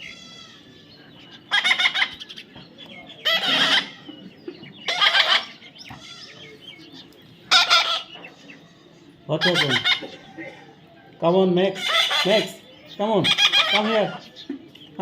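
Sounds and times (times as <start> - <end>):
parrot squawking: 1.5 - 2.2, 3.2 - 4.1, 4.9 - 6.4, 7.5 - 8.1, 9.4 - 10.3, 11.7 - 12.6, 13.2 - 14.3.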